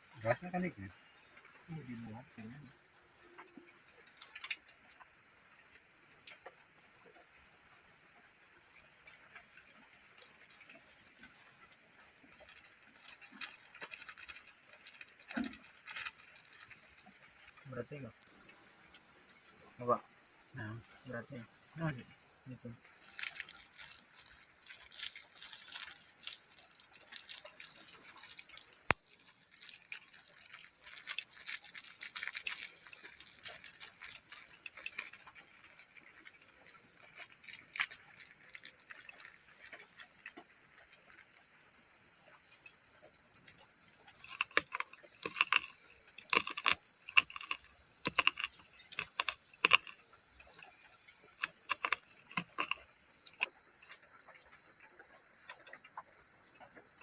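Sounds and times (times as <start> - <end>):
crickets chirping: 0.0 - 57.0
sharp clicks and knocks: 44.2 - 50.0, 51.4 - 52.8.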